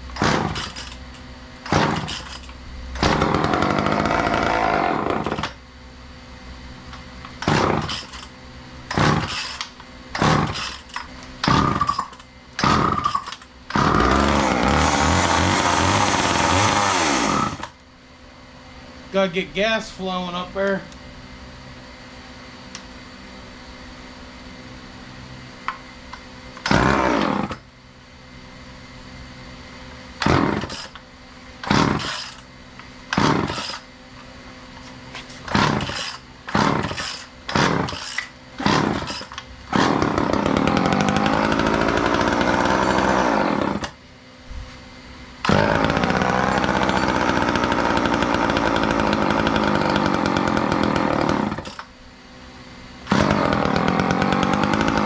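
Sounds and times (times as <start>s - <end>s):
chainsaw engine revving: 0.2s - 1.0s, 1.7s - 2.4s, 3.0s - 5.6s, 7.4s - 8.2s, 8.9s - 9.6s, 10.2s - 17.8s, 26.6s - 27.6s, 30.2s - 31.0s, 31.6s - 32.4s, 33.1s - 33.8s, 35.5s - 44.0s, 45.5s - 51.8s, 53.0s - 55.0s
chainsaw pull-start bursts: 0.2s - 1.0s, 1.6s - 5.6s, 7.4s - 8.3s, 8.9s - 17.8s, 26.6s - 27.6s, 30.2s - 31.0s, 31.6s - 32.5s, 33.1s - 33.9s, 35.5s - 44.0s, 45.4s - 51.9s, 53.0s - 55.0s.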